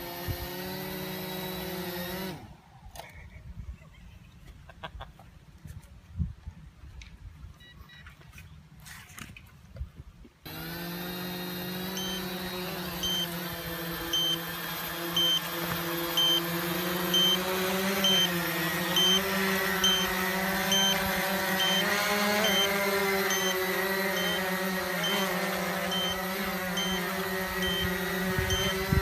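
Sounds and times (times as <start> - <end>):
quadcopter motors humming: 0.0 - 3.4, 10.4 - 29.0.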